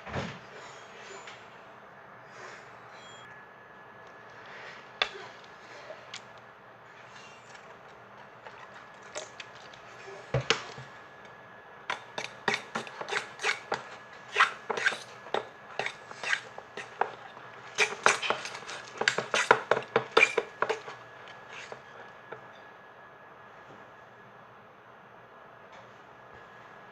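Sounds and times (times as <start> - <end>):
utensil clinking against bowl: 11.9 - 21.8.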